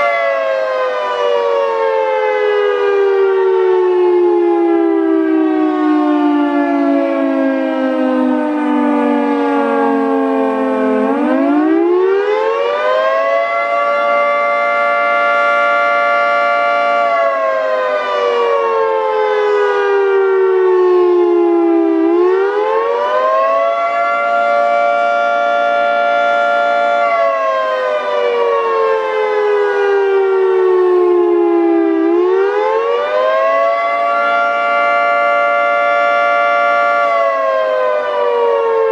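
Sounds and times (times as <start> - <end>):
three-tone siren wailing: 0.0 - 38.9.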